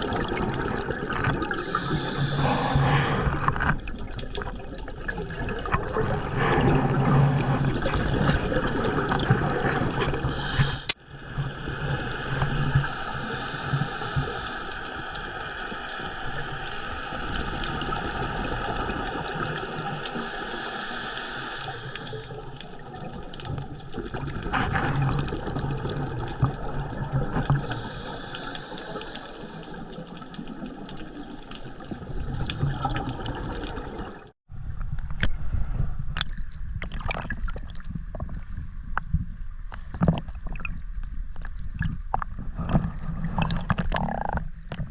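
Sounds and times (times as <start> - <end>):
water gurgling and bubbling: 0.0 - 20.4, 21.8 - 34.3, 35.9 - 39.2, 39.8 - 44.9
high hiss: 1.6 - 3.3, 12.8 - 14.9, 20.2 - 22.3, 27.6 - 29.8.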